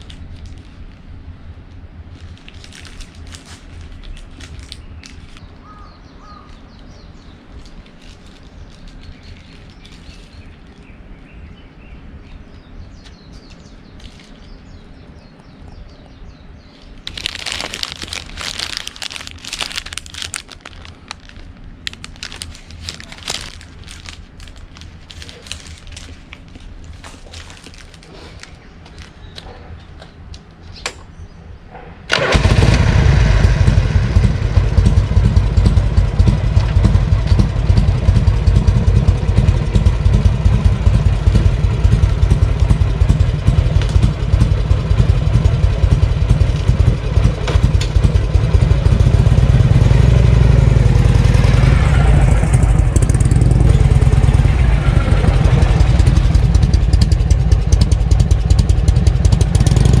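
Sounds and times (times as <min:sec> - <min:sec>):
motorcycle engine starting and idling: 0:32.0 - 1:00.0.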